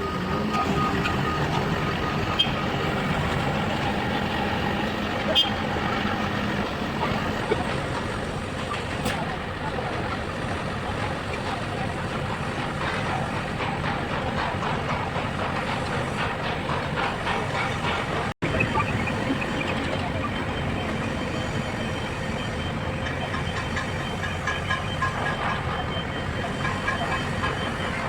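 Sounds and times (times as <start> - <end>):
heavy machinery running: 0.0 - 28.0
indistinct voices: 18.4 - 22.1.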